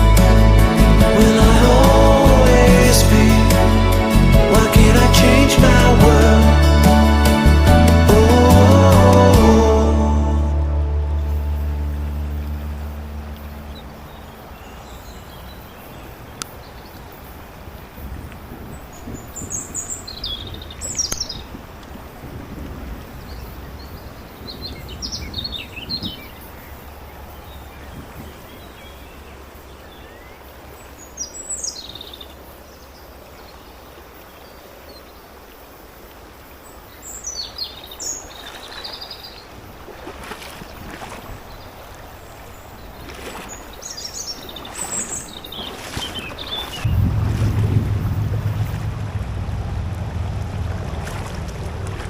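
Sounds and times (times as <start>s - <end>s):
mountain stream rushing: 0.0s - 52.0s
songbirds chirping: 0.0s - 52.0s
wind rumble on microphone: 17.6s - 28.9s, 39.7s - 52.0s.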